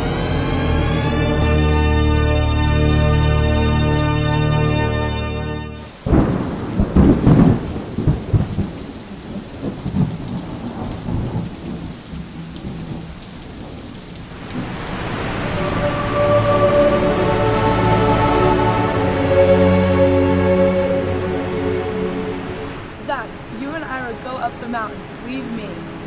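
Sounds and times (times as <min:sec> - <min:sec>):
steady rain: 0:00.0 - 0:26.0
thunder cracks and rumbles: 0:06.0 - 0:17.6.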